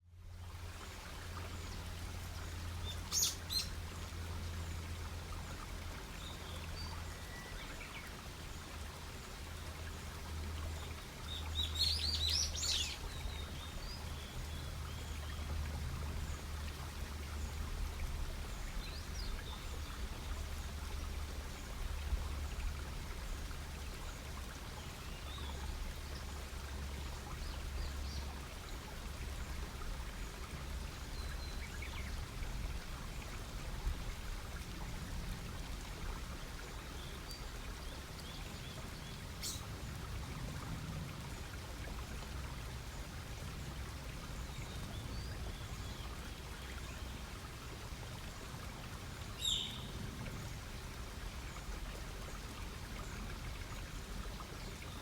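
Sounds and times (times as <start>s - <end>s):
songbird chirps: 10.8s - 15.6s, 49.2s - 50.0s.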